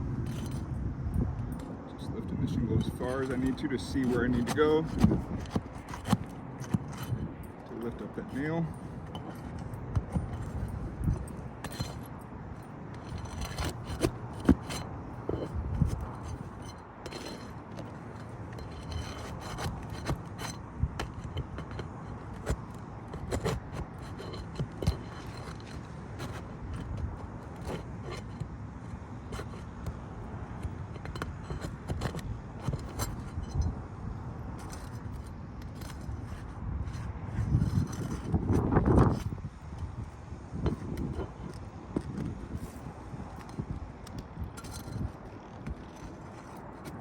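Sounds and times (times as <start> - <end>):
flat bar scraping under shingles: 0.0 - 0.7, 2.2 - 47.0.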